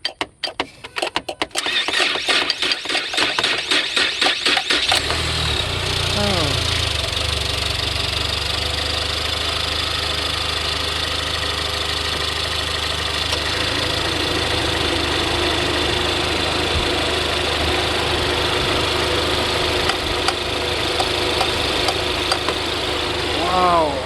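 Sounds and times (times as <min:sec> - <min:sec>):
car engine idling: 0:03.9 - 0:24.0.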